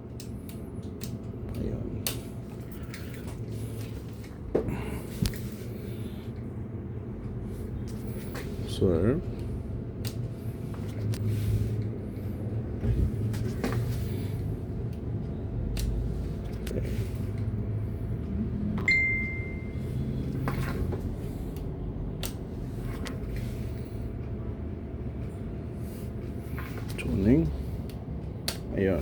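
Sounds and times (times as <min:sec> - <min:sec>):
amplifier hum and noise: 0:00.0 - 0:29.0
short high beep: 0:18.8 - 0:19.8.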